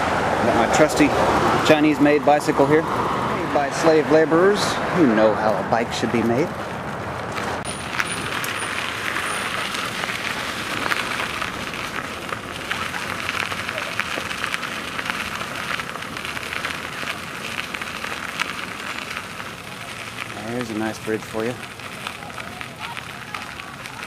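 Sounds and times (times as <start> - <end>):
bicycle tyres rolling on dirt: 0.2 - 24.0.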